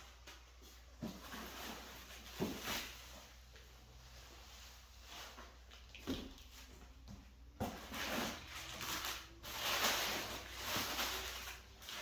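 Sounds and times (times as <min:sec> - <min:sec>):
packing material rustling: 0:07.6 - 0:12.0.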